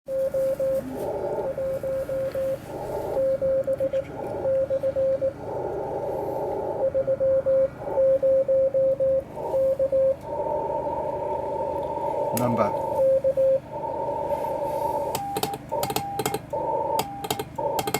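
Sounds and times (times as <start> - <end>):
morse code beeps: 0.1 - 17.9
radio hiss: 9.3 - 15.4.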